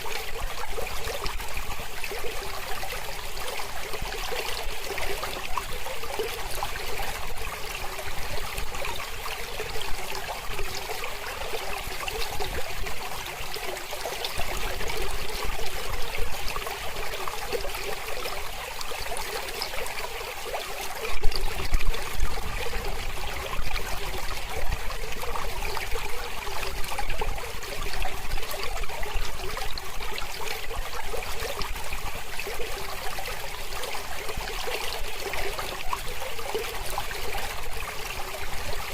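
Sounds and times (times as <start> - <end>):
river flowing over stones: 0.0 - 38.9.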